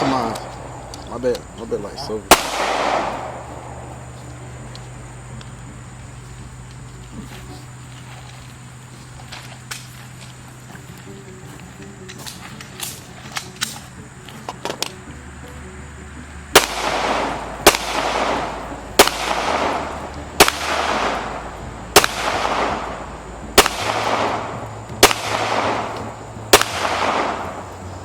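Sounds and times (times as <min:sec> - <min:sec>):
pistol shots: 0:00.0 - 0:01.4, 0:02.3 - 0:04.0, 0:16.5 - 0:27.7
rolling echo: 0:00.0 - 0:28.0.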